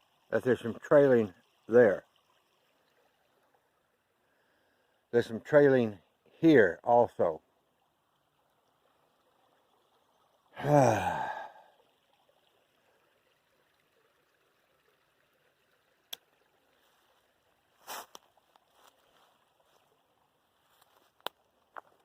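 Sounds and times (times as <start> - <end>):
person sighing: 10.6 - 11.7
footsteps in dry leaves: 17.8 - 19.8
twig snapping: 20.8 - 21.9.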